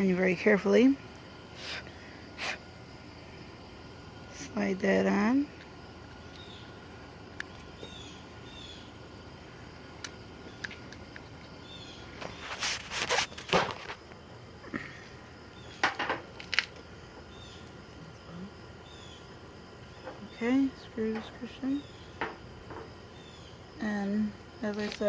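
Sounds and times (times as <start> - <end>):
faint bird chirps: 6.3 - 6.8, 7.8 - 9.0, 18.8 - 19.3
scraping and rustling handling: 12.2 - 14.1.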